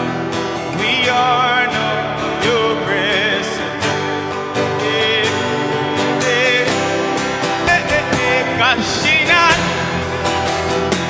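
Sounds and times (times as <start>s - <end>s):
wordless singing with vibrato: 0.0s - 11.0s
band holding sustained chords: 3.4s - 11.0s.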